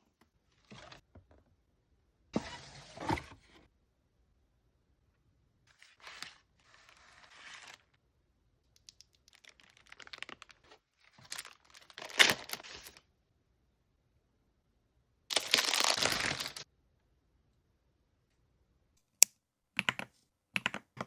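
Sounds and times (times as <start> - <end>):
packaging tearing and crinkling: 9.3 - 10.6, 11.3 - 13.0, 15.3 - 16.6.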